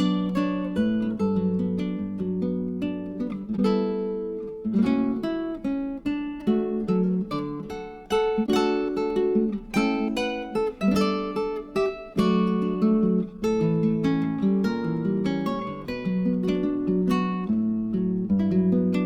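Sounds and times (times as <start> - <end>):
acoustic guitar strumming chords: 0.0 - 19.0.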